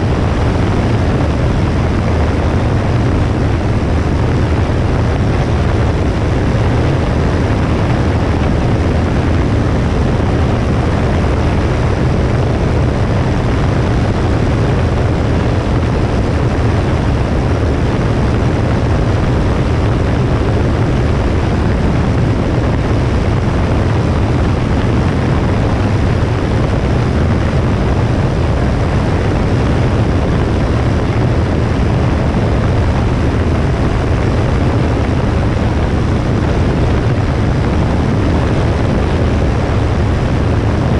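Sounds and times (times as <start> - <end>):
airplane engine and propeller drone: 0.0 - 40.9.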